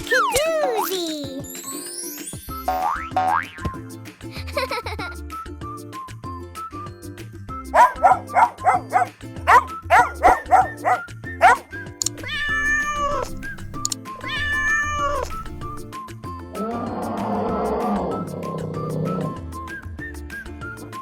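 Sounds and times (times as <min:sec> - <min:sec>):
cheerful background music: 0:00.0 - 0:21.0
cat meowing: 0:12.2 - 0:15.8.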